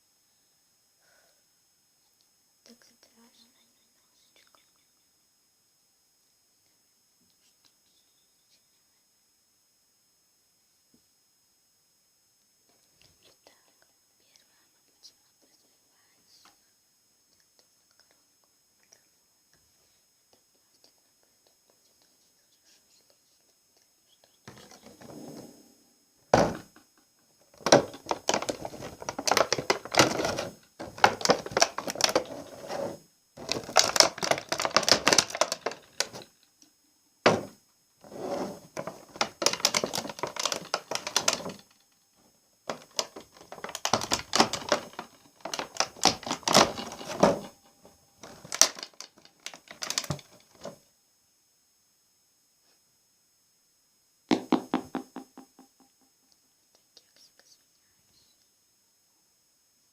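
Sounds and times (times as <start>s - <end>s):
rapid clicking and tapping: 27.6s - 32.5s, 33.4s - 36.3s, 38.8s - 41.8s, 42.7s - 47.6s, 48.2s - 50.7s.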